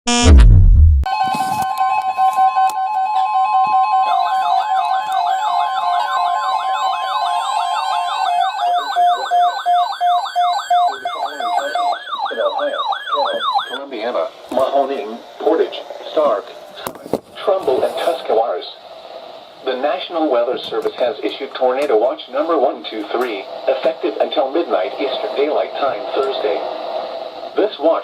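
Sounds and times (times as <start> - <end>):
pulsing beep: 0.1 - 1.0
steady alert tone: 0.1 - 1.0
siren warble: 0.1 - 1.6, 2.2 - 13.9
broadcast voice: 10.8 - 28.0.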